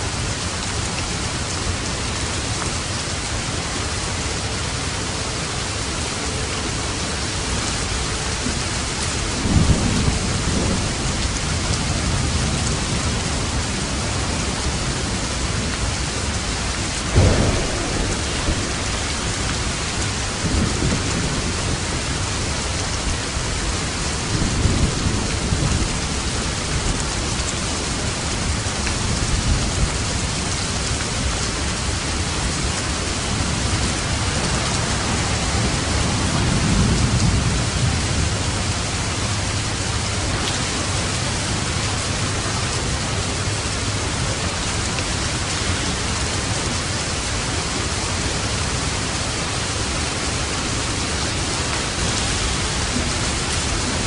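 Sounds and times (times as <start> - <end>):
steady rain falling: 0.0 - 54.0
distant thunder rolling: 16.4 - 23.4.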